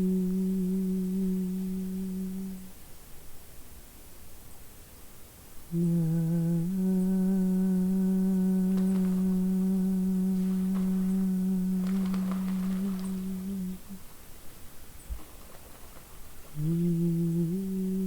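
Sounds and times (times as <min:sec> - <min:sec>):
faint clicks: 0:08.6 - 0:14.0.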